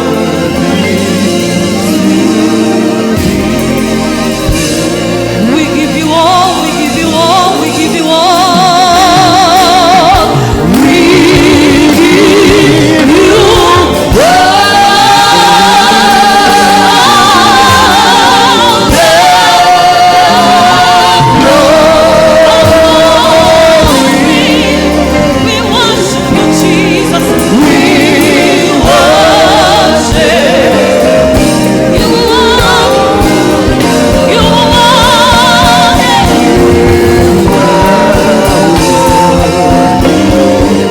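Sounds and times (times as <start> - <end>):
gospel choir singing: 0.0 - 40.9.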